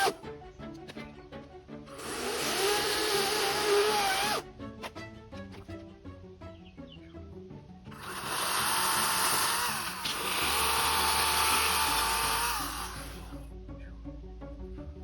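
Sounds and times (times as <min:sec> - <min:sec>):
background music: 0:00.0 - 0:15.0
chainsaw cutting through log: 0:01.9 - 0:04.4, 0:07.9 - 0:13.4.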